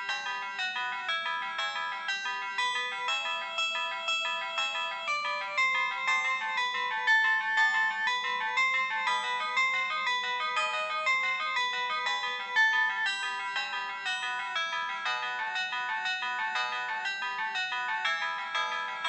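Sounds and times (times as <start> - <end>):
polyphonic phone ringtone: 0.0 - 19.0.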